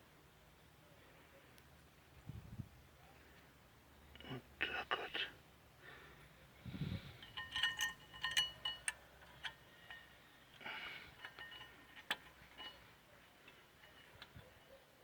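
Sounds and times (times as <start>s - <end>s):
metallic clicks of brake parts: 7.1s - 14.4s.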